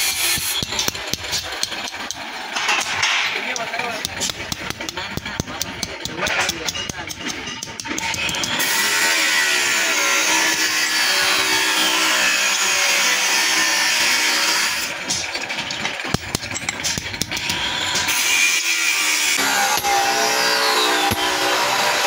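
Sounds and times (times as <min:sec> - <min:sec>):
power tool with steel saw blade: 0:08.1 - 0:15.1, 0:17.4 - 0:22.0.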